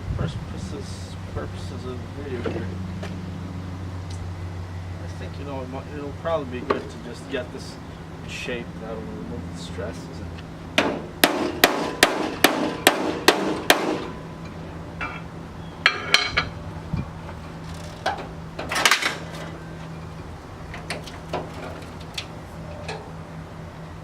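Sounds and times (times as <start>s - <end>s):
hammer striking sheet metal: 10.8s - 14.2s.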